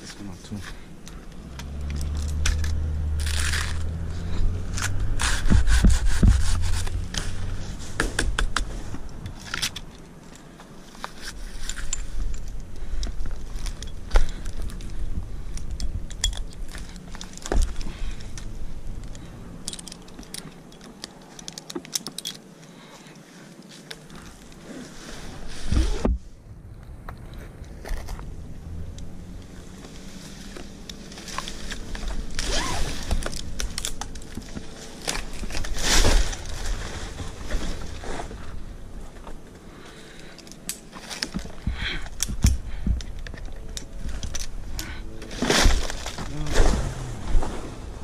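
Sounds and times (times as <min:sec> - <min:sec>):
dry palm fronds scraping and crackling: 0:00.0 - 0:26.4, 0:27.1 - 0:48.0.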